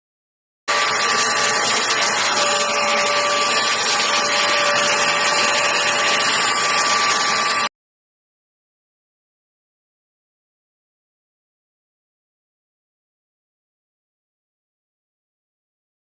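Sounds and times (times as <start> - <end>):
handheld vacuum cleaner running: 0.7 - 7.7.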